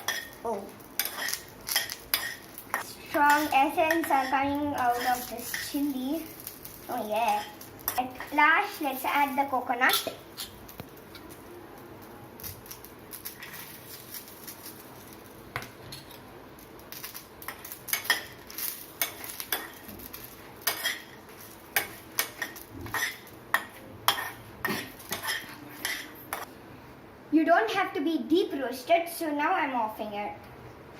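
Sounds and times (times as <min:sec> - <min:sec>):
spoon scraping and clinking pan: 0:01.0 - 0:05.8, 0:21.8 - 0:24.4, 0:25.0 - 0:26.5.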